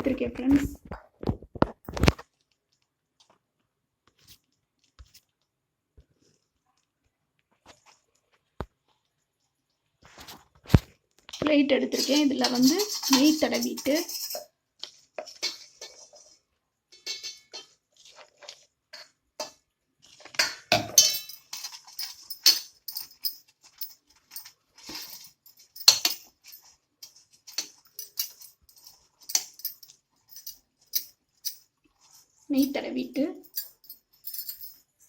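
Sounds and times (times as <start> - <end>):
utensil scraping a plate: 12.0 - 14.5, 15.2 - 16.4.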